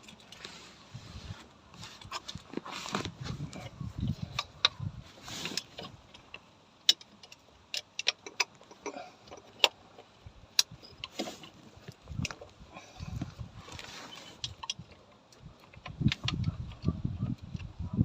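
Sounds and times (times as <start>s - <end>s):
low rumble of handling: 0.0s - 18.0s
hand tools clicking on metal: 5.4s - 13.2s, 14.2s - 17.7s.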